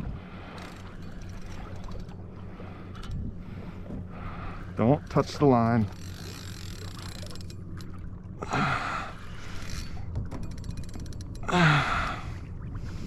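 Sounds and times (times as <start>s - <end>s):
man gasping breaths: 11.5s - 12.3s.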